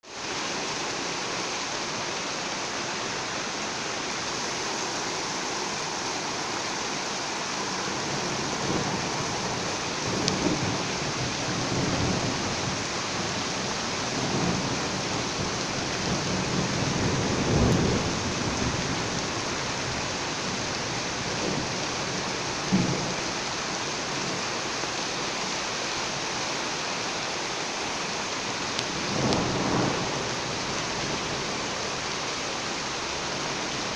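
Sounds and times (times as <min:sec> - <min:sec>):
steady rain: 0:00.0 - 0:33.9
thunder rumbling: 0:04.7 - 0:24.4, 0:28.8 - 0:32.1.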